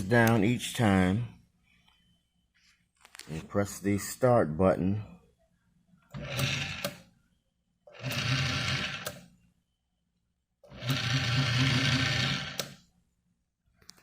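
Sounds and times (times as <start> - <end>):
key cutting machine motor: 6.1 - 7.0, 7.9 - 9.2, 10.7 - 12.8.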